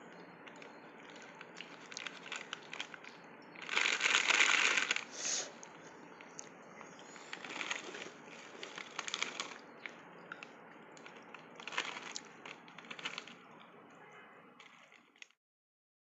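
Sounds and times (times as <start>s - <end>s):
cereal crunching: 0.5s - 5.3s, 7.1s - 13.4s.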